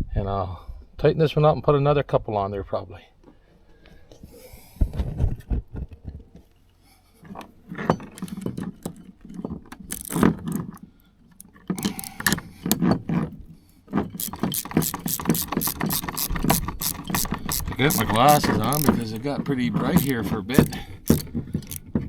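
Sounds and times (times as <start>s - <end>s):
metal clinking and scraping: 7.2s - 22.0s
ratchet wrench clicking: 8.0s - 9.0s, 9.8s - 10.8s, 11.4s - 13.0s, 14.1s - 22.0s.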